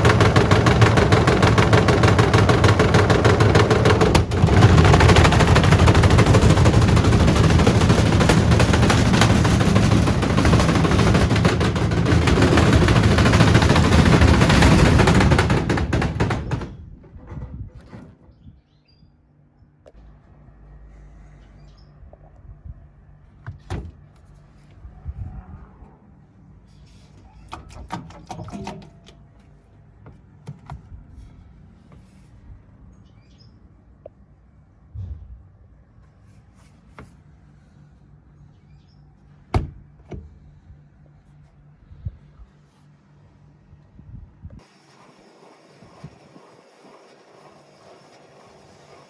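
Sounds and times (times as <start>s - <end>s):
heavy thump: 0.0s - 17.7s, 34.9s - 35.6s
washing machine drum banging: 0.0s - 17.7s
sharp clicks and knocks: 0.0s - 18.2s.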